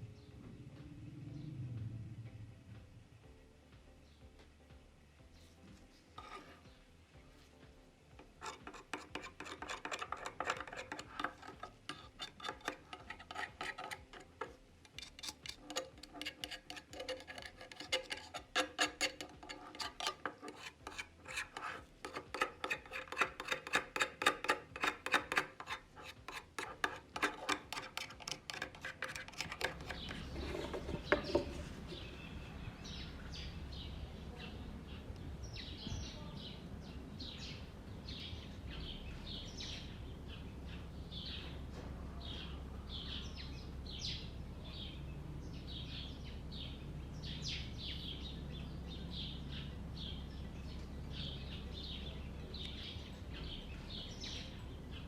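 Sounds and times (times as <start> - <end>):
rapid scraping strokes: 8.2 - 32.3.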